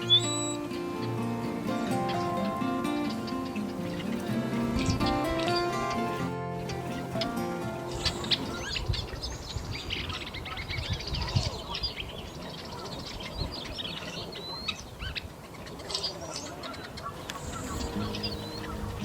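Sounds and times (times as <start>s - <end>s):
birds chirping: 0.0s - 19.0s.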